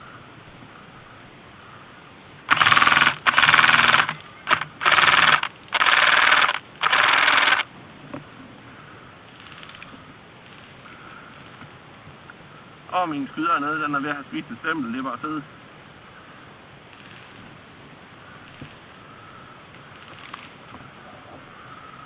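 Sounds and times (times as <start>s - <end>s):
toy gun gearbox buzzing rattle: 2.5s - 7.6s.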